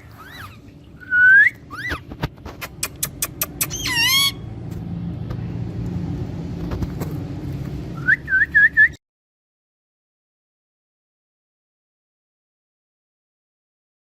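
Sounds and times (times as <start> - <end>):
parrot whistled calls: 0.0 - 2.0, 3.6 - 4.4
low steady rumble: 0.0 - 9.0.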